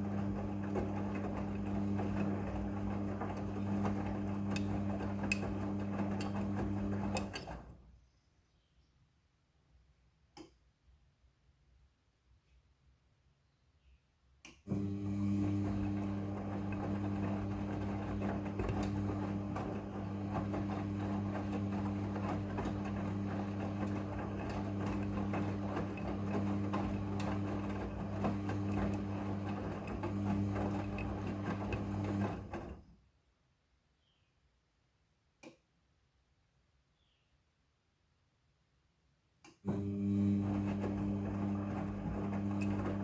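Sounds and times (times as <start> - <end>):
clothes and water churning: 0.0 - 7.5, 14.7 - 32.7, 39.7 - 43.0
washing machine drum turning: 0.0 - 7.5, 14.7 - 32.8, 39.7 - 43.0.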